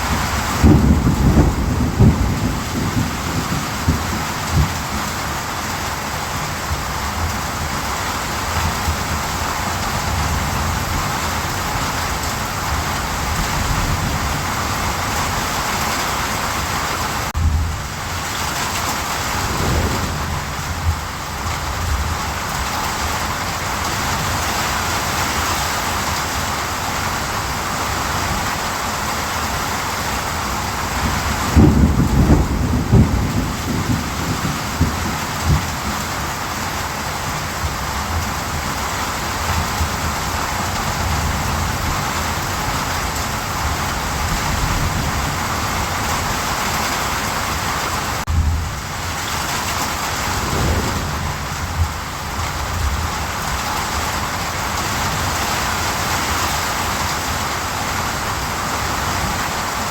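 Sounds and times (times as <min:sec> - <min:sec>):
rolling thunder: 0:00.0 - 0:05.2, 0:17.4 - 0:23.0, 0:31.0 - 0:35.9, 0:49.9 - 0:53.7
steady rain: 0:00.0 - 0:59.9.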